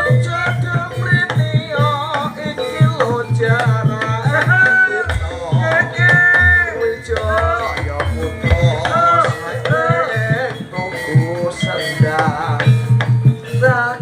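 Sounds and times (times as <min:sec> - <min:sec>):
hand drums beating fast: 0:00.0 - 0:14.0
wavering pitch-bending melody: 0:04.6 - 0:12.6.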